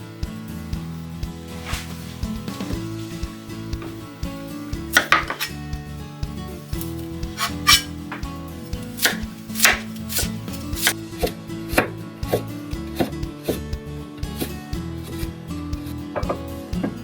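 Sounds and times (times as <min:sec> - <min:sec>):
knife chopping on cutting board: 0:04.9 - 0:05.6, 0:07.4 - 0:08.3, 0:09.0 - 0:11.0.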